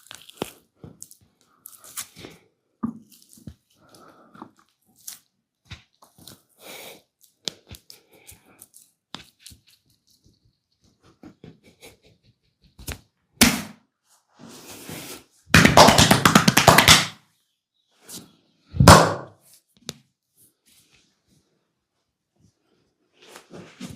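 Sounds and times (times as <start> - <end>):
hands slapping and rubbing skin: 15.5 - 17.2.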